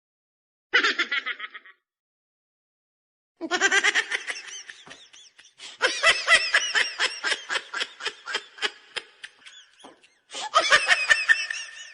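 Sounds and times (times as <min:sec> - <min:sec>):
high-pitched rapid laugh: 0:00.8 - 0:01.8, 0:03.4 - 0:11.9.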